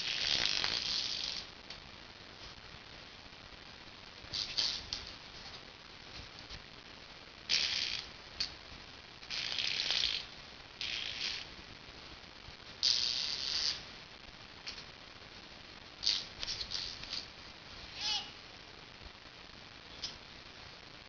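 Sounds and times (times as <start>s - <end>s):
baby making mouth sounds: 17.9s - 18.4s.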